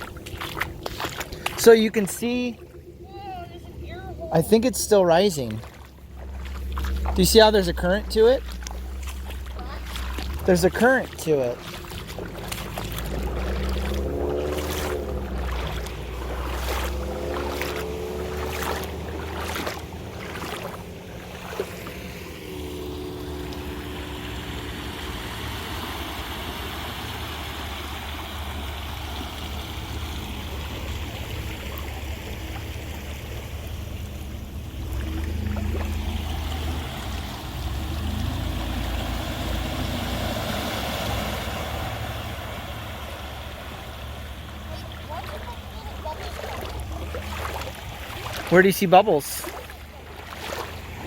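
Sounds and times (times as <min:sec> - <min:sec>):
low rumble: 0:00.0 - 0:24.5
floodwater rushing: 0:00.0 - 0:51.0.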